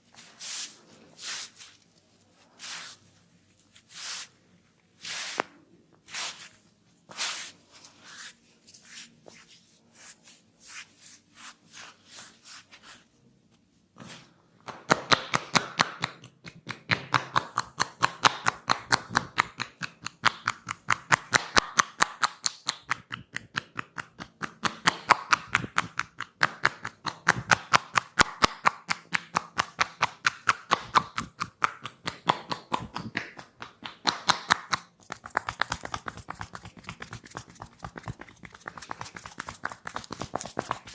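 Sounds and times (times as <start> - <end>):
hand slaps and rubs: 5.0 - 12.9, 14.0 - 40.9
fast hand taps and pats: 14.6 - 40.9.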